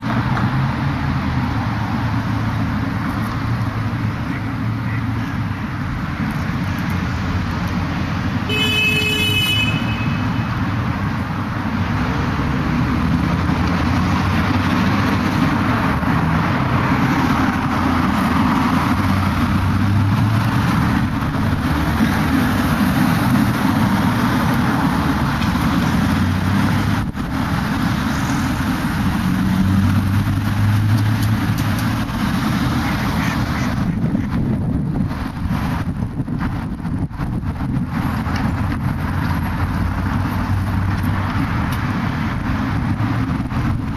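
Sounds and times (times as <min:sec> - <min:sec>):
city street traffic rumble: 0:00.0 - 0:43.9
car horn honk: 0:08.5 - 0:10.5.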